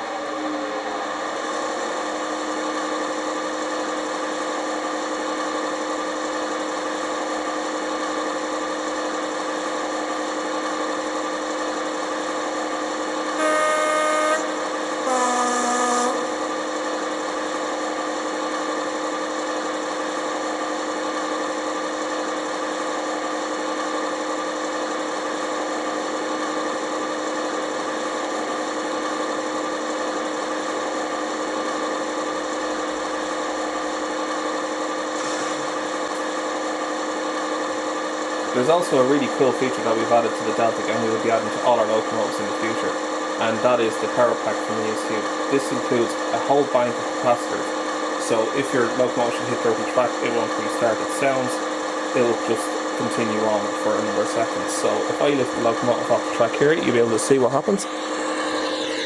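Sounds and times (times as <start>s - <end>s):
model locomotive engine idling: 0.0s - 59.0s
two-tone horn blasts: 13.3s - 16.8s, 57.8s - 59.0s.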